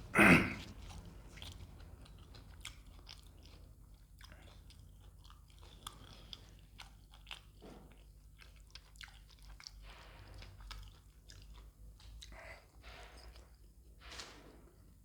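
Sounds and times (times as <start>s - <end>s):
person chewing crunchy food: 0.0s - 9.8s, 10.4s - 12.3s.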